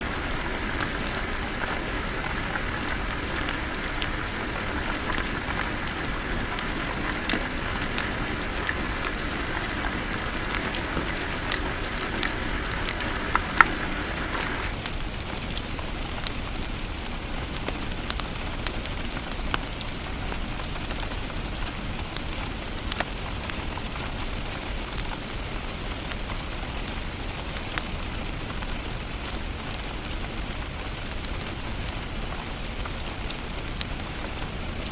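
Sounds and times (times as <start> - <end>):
wood fire crackling and popping: 0.0 - 34.9.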